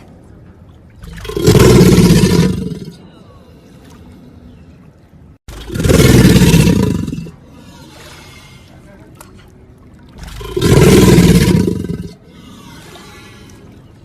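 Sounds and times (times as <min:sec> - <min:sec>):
crocodilian low rough calls: 0:10.2 - 0:13.8.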